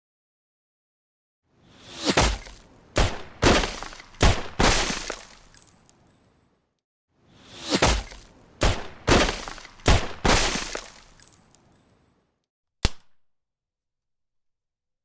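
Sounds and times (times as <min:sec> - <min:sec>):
handgun shots: 0:02.0 - 0:05.6, 0:07.8 - 0:11.3.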